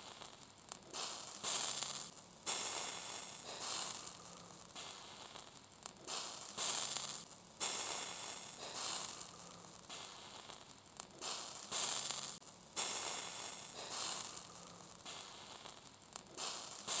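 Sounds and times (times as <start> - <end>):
sausages sizzling: 0.0 - 17.0.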